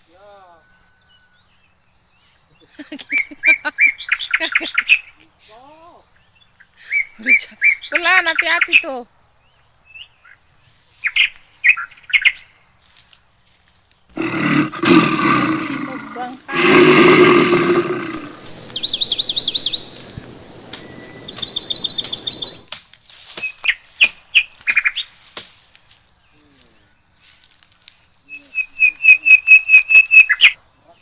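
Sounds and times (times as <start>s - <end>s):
faint high-pitched insect drone: 0.0s - 14.1s, 15.2s - 31.0s
bird calls: 14.2s - 22.7s
rough rushing noise: 14.2s - 22.7s.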